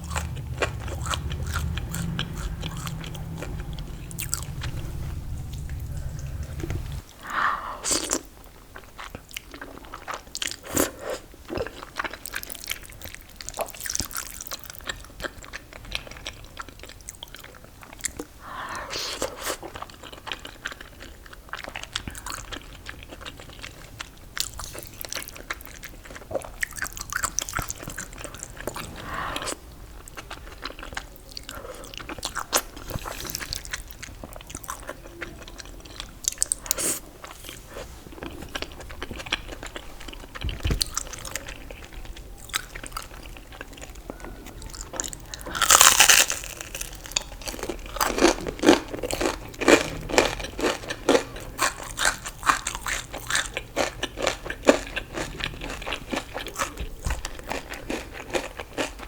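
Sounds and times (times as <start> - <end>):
crunchy bites and chewing: 44.6 - 59.0.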